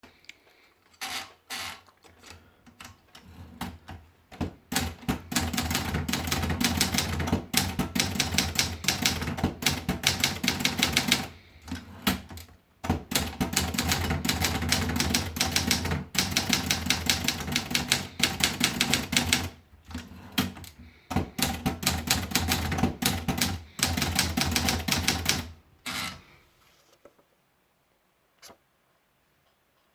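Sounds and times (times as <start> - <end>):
typewriter keys clacking: 4.7 - 25.5.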